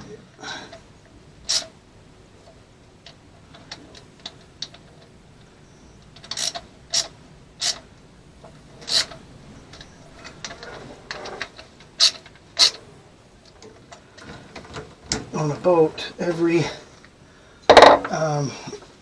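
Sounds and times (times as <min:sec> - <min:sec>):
tools clicking on hose fittings: 0:01.5 - 0:01.7, 0:02.4 - 0:07.9, 0:08.8 - 0:12.8.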